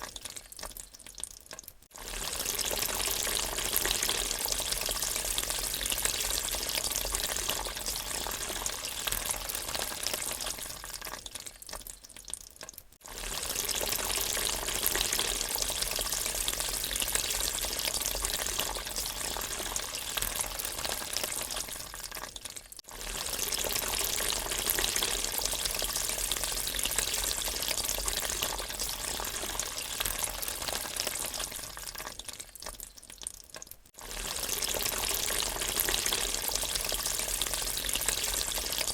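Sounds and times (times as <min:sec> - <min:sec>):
water gurgling down a drain: 0:34.0 - 0:38.9.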